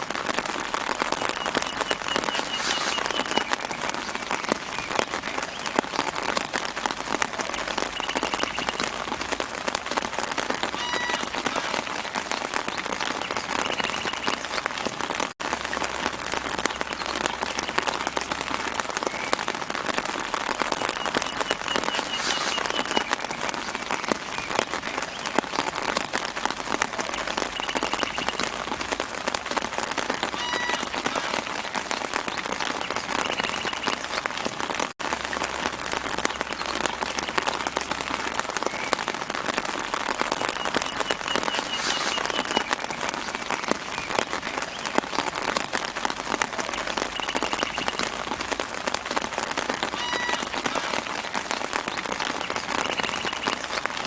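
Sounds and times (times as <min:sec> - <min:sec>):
rain pattering on leaves: 0:00.0 - 0:54.0
faint bird chirps: 0:01.3 - 0:03.8, 0:20.8 - 0:23.2.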